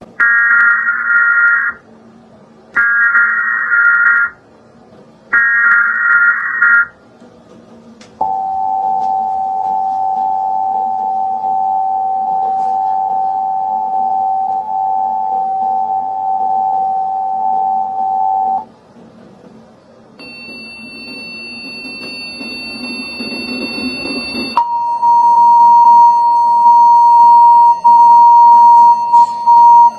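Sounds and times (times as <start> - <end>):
loud steady alert beep: 0.2 - 1.8, 2.8 - 4.4, 5.4 - 7.0, 8.2 - 18.6, 20.2 - 29.9
screeching digital header burst: 0.2 - 1.8, 2.8 - 4.4, 5.4 - 6.9
two-tone attention signal: 8.2 - 18.6, 20.2 - 29.9
faint high whines: 8.2 - 18.8, 20.1 - 29.9.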